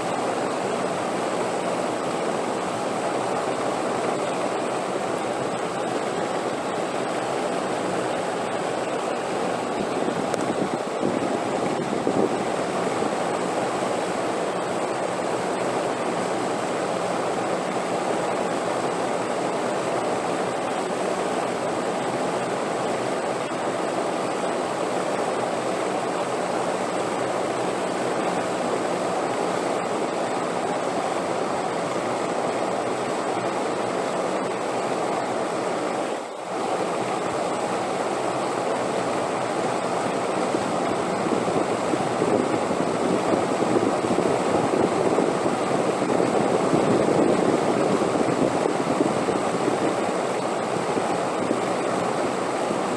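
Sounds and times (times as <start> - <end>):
wind blowing: 5.5 - 14.2, 40.1 - 52.8.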